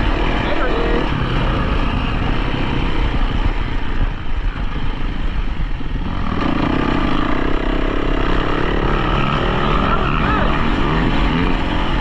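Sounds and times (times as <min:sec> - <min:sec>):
dirt bike engine running: 0:00.0 - 0:12.0.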